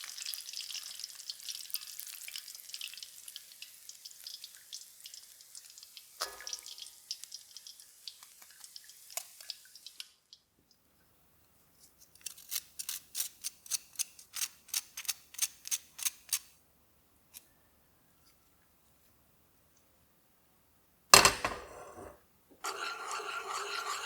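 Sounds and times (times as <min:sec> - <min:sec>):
chicken frying in hot oil: 0:00.0 - 0:10.5.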